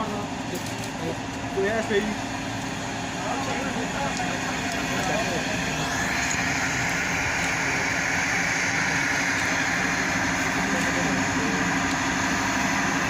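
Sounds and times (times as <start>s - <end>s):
heavy engine humming: 0.0s - 13.0s.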